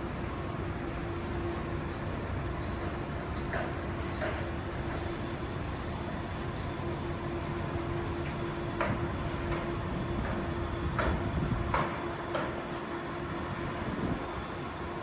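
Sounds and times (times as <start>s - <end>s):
low traffic rumble: 0.0s - 15.0s.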